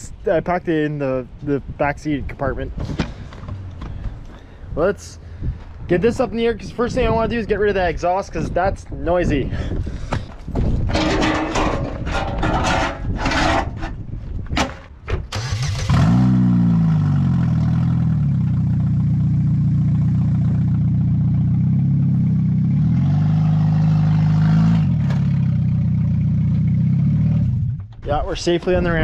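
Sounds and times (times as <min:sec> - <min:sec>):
car engine starting and revving: 0:15.3 - 0:27.9
loud worn exhaust: 0:15.4 - 0:29.0.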